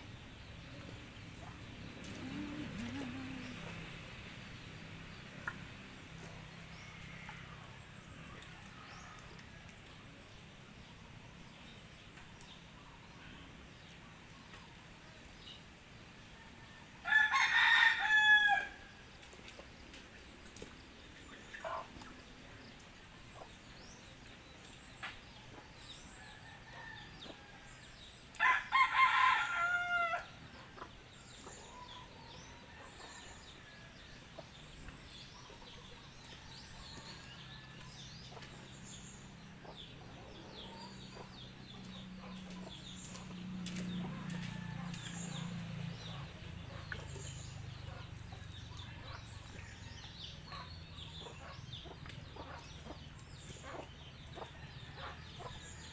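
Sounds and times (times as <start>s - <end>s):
low drone: 0.0s - 5.0s
rooster crowing: 17.0s - 18.8s, 28.4s - 30.2s.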